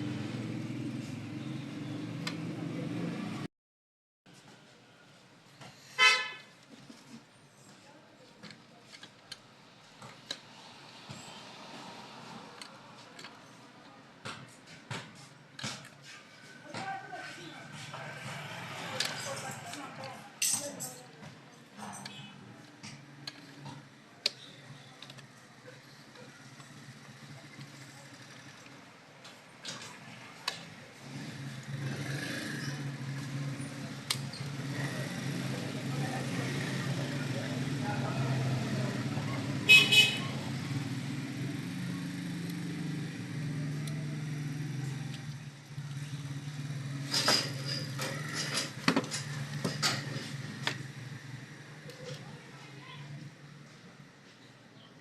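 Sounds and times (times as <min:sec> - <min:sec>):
street traffic hum: 0:00.0 - 0:03.5, 0:04.3 - 0:55.0
vehicle horn toot: 0:06.0 - 0:06.4, 0:39.7 - 0:40.4
small hard parts clicking: 0:21.8 - 0:25.3.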